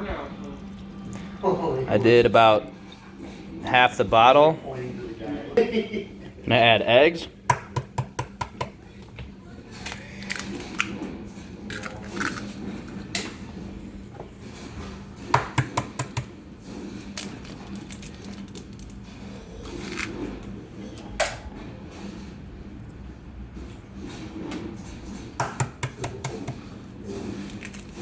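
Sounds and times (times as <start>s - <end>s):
eggs cracked against a bowl: 7.5s - 8.8s, 15.4s - 16.3s.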